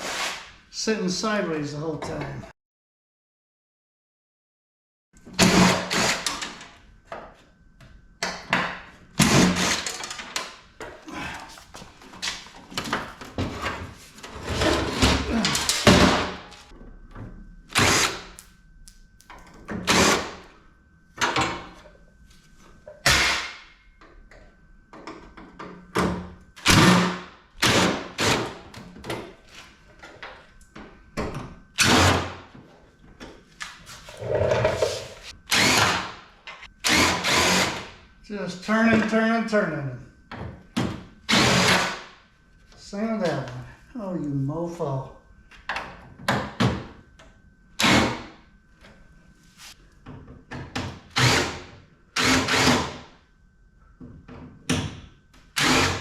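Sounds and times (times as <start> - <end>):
power drill bursts: 5.4 - 6.4, 9.2 - 10.0, 17.8 - 18.2, 35.5 - 36.2, 36.8 - 37.9, 41.3 - 42.0, 51.1 - 51.6, 52.2 - 53.0, 55.6 - 56.0.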